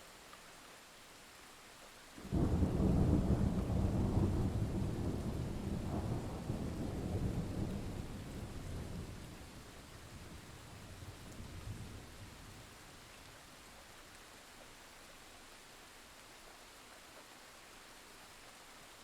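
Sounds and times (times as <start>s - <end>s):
light rain: 0.0s - 19.0s
thunder clap and rumble: 2.3s - 12.3s.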